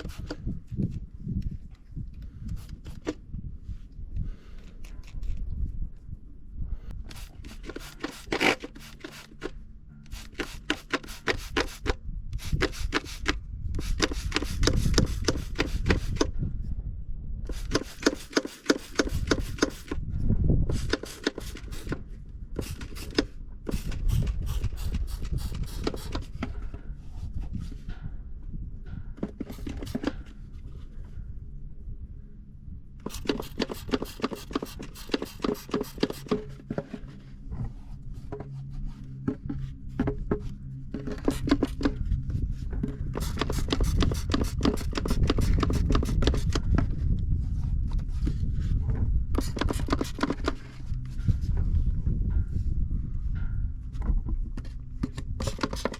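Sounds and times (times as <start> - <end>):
low rumble: 11.9 - 17.7, 19.0 - 33.2, 36.1 - 55.5.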